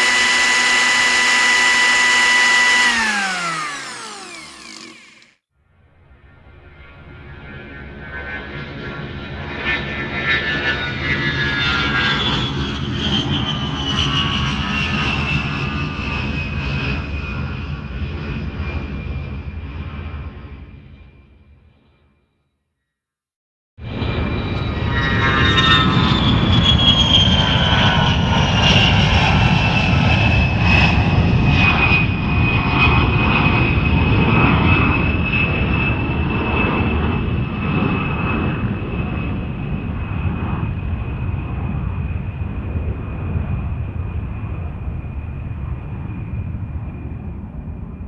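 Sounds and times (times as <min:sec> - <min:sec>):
high-pitched aircraft whine: 0:00.0 - 0:05.2, 0:05.8 - 0:22.0, 0:23.8 - 0:48.0
aircraft rumble: 0:23.8 - 0:48.0.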